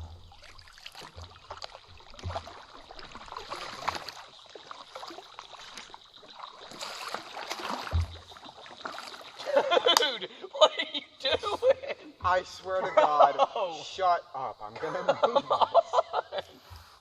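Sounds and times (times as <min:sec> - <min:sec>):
paddles splashing in water: 0:00.0 - 0:10.5.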